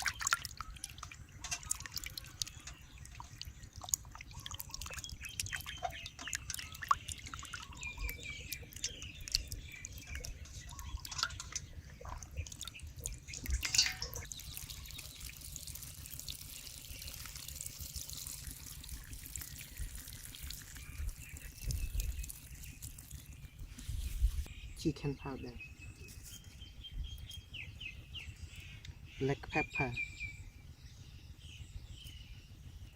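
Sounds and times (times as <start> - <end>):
small clicks and splashes: 0.0 - 23.6
water dripping and trickling: 0.0 - 24.5.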